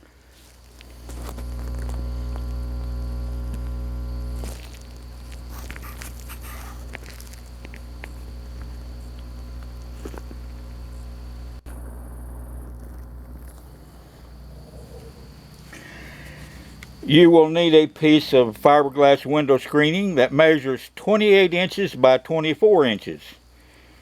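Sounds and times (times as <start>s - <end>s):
rustling: 0.0s - 17.0s
low electrical hum: 0.0s - 24.0s.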